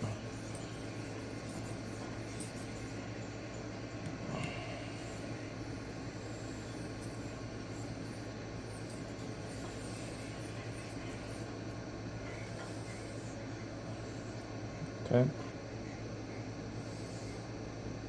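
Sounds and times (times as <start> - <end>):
knife scraping on sharpening plate: 0.0 - 3.0.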